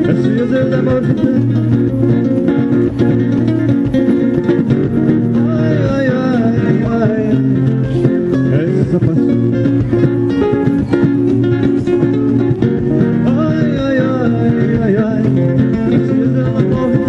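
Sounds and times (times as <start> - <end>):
flamenco acoustic guitar: 0.0 - 17.0.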